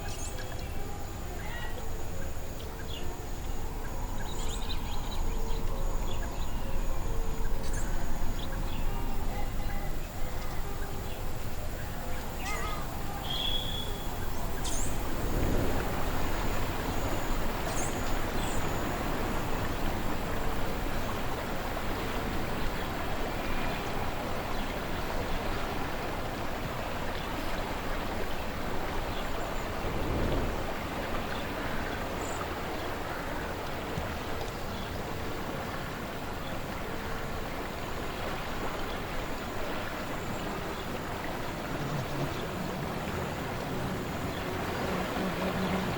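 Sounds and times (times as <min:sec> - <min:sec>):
river water flowing: 0:00.0 - 0:45.9
wind gusts: 0:00.0 - 0:45.9
bird chirps: 0:12.2 - 0:15.1.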